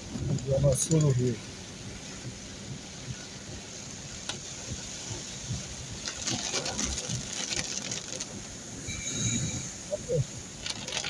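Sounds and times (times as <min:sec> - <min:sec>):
heavy rain hissing: 0:06.8 - 0:11.0.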